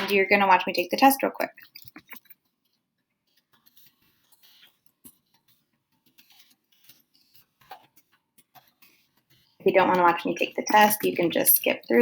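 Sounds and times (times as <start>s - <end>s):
keyboard keys typing: 9.6s - 12.0s.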